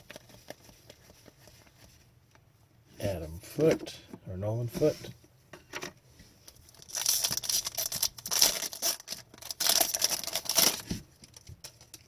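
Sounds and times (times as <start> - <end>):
cards rustling: 0.0 - 2.0
wrappers crinkling: 6.7 - 12.0.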